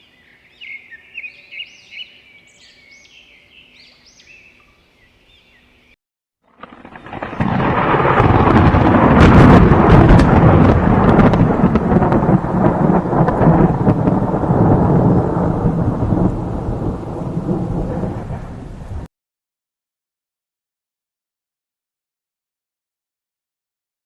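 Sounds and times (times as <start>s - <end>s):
thunderclap and rumble: 6.5s - 19.1s.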